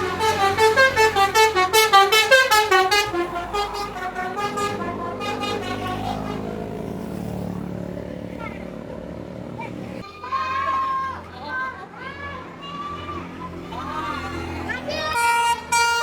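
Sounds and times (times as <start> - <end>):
horn playing a quick melody: 0.0 - 6.5.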